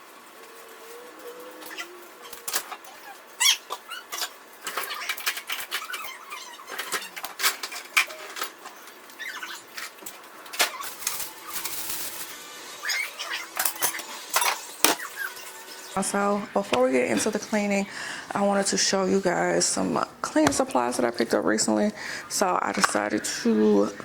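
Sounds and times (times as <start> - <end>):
plastic bags rustling: 6.8 - 12.4
items knocking and clicking: 20.3 - 20.8.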